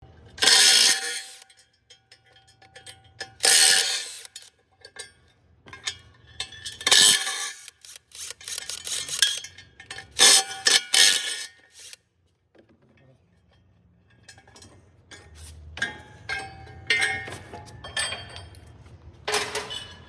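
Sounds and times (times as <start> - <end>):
metallic clanking and scraping: 0.3 - 12.0, 13.5 - 20.0
sharp clicks: 7.6 - 9.4.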